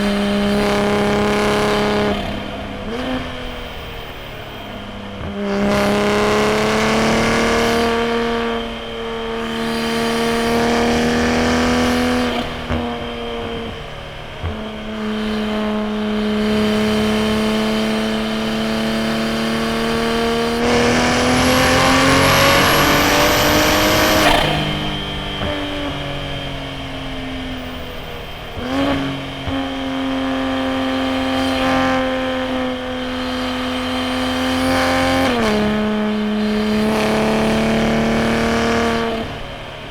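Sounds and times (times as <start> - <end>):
car engine revving: 0.0 - 39.9
high whine: 15.7 - 30.8.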